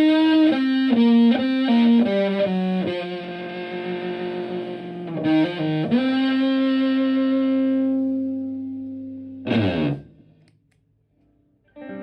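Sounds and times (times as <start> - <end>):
fuzzy electric guitar note: 0.0 - 10.2
guitar stab sliding down: 9.4 - 10.2.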